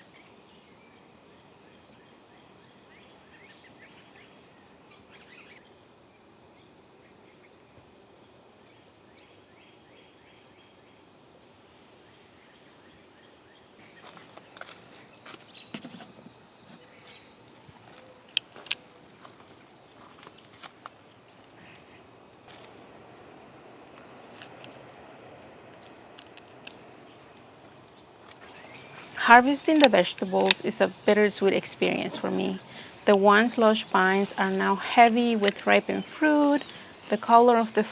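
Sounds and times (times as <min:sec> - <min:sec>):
insects trilling: 0:00.0 - 0:37.9
rustling: 0:13.8 - 0:37.9
sharp clicks: 0:28.3 - 0:37.9.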